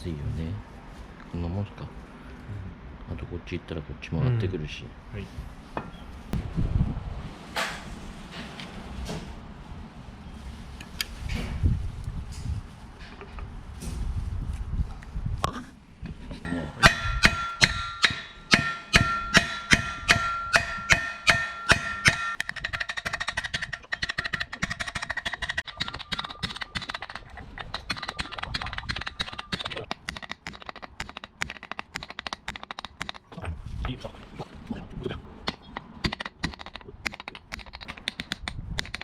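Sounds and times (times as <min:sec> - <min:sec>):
hammer striking metal: 0:16.5 - 0:22.5.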